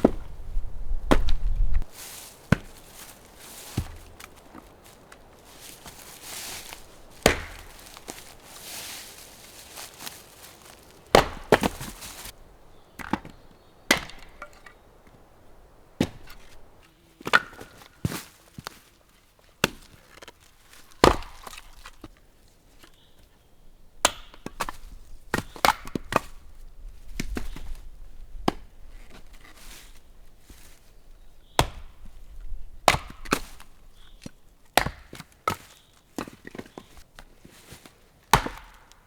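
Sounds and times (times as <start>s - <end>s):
axe chopping wood: 0.0s - 0.3s, 1.1s - 1.4s, 2.4s - 12.4s, 13.0s - 15.2s, 16.0s - 18.2s, 19.6s - 20.0s, 20.9s - 21.6s, 24.0s - 26.4s, 31.6s - 32.0s, 32.8s - 33.7s, 34.8s - 36.4s, 38.3s - 39.0s.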